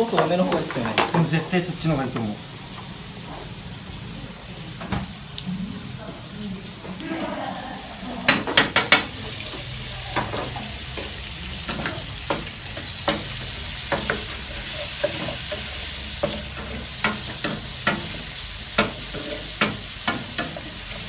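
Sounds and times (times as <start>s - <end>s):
chicken sizzling in a frying pan: 0.0s - 21.0s
utensil scraping a pan: 8.3s - 21.0s.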